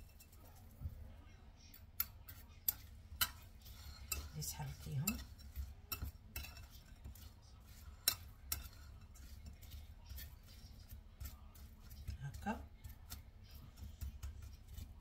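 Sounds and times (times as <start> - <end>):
spoon scraping: 0.0 - 0.7, 1.6 - 15.0
spoon clinking against container: 2.0 - 12.4.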